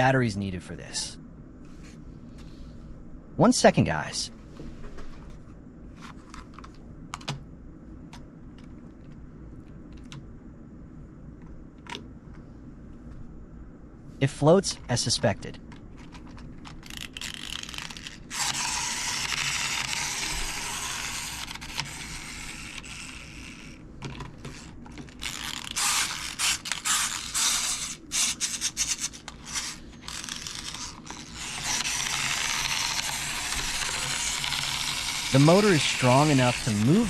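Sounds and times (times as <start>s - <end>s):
clockwork motor whirring: 16.8s - 23.8s, 24.4s - 37.0s.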